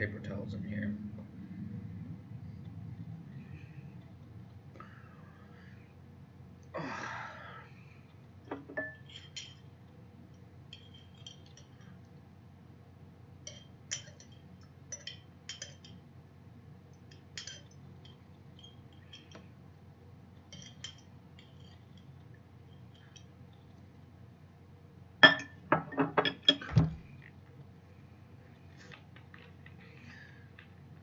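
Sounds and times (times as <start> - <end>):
metal utensil clinking on glass jar: 8.8 - 9.7, 10.7 - 11.8, 13.5 - 16.0, 17.1 - 19.4, 20.5 - 22.1.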